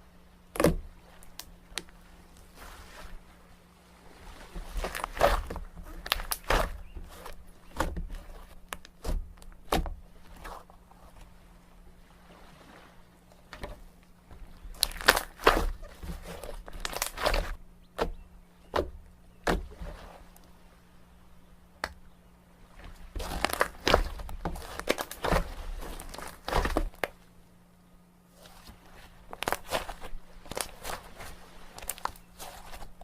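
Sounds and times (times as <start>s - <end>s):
slime squished by hand: 4.8s - 9.8s, 14.7s - 17.5s, 23.2s - 27.1s.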